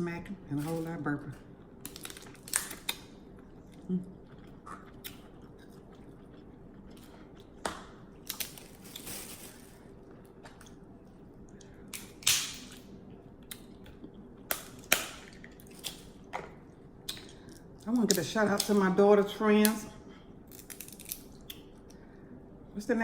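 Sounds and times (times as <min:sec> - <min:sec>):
chewing: 0:01.4 - 0:09.0
crab shells cracking: 0:01.6 - 0:03.8, 0:07.0 - 0:09.6, 0:11.6 - 0:16.3, 0:20.5 - 0:22.0.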